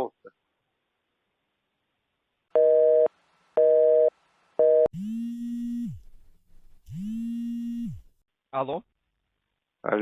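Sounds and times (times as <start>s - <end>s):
buzzy telephone ringing tone: 2.6s - 5.2s.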